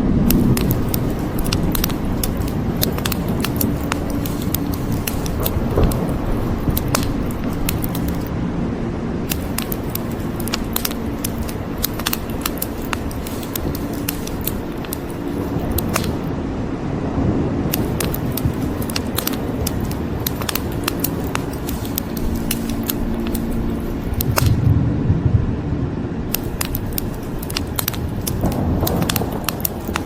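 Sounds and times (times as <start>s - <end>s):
rain rushing: 0.0s - 8.3s, 26.1s - 30.0s
wood fire crackling: 0.0s - 8.3s, 9.3s - 16.3s, 17.7s - 24.7s, 26.3s - 30.0s.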